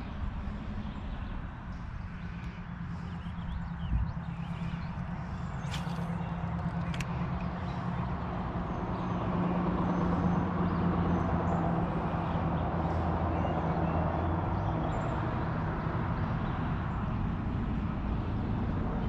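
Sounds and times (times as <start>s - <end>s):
low engine drone: 0.0s - 19.0s.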